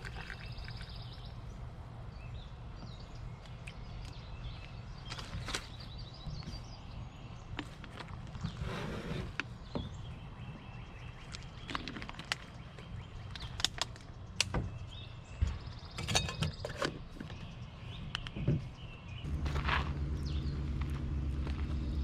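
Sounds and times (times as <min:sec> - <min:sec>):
low steady rumble: 0:18.7 - 0:22.0.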